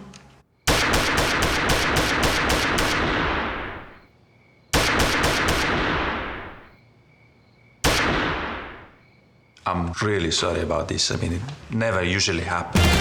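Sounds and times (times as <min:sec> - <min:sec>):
automatic gunfire with echo: 0:00.7 - 0:04.1, 0:04.8 - 0:06.8, 0:07.8 - 0:09.0
single gunshot: 0:00.7 - 0:04.1, 0:04.8 - 0:06.8, 0:07.8 - 0:09.0.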